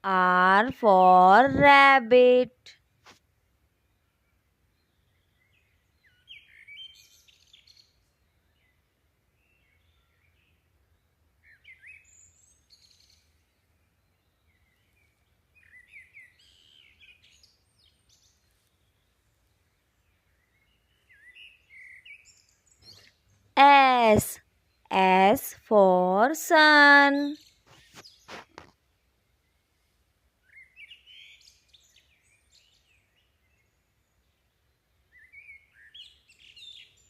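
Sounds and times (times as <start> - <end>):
faint bird chirps: 9.4 - 23.5.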